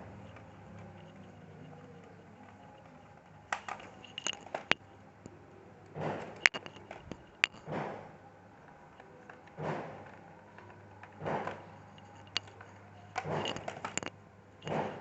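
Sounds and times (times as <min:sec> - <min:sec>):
screws and plastic parts clicking: 0:00.2 - 0:04.8, 0:06.2 - 0:07.7, 0:10.6 - 0:14.9.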